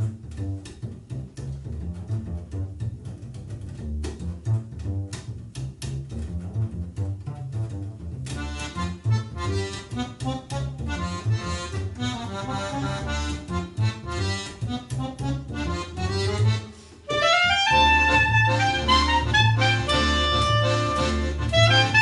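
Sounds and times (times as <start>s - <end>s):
plucked double bass: 0.0s - 22.0s
accordion chords and melody: 8.3s - 22.0s.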